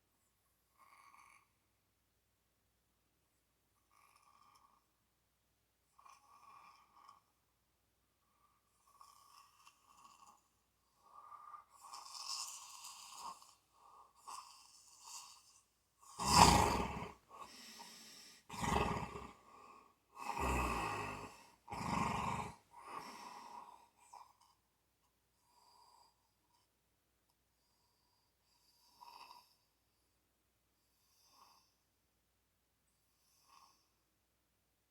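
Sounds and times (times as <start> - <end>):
person snoring: 16.1 - 23.8.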